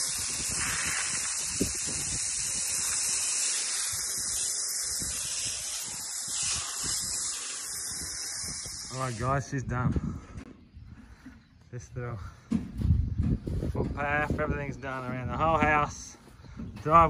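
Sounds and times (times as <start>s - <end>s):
water spraying from a hose: 0.0s - 9.6s.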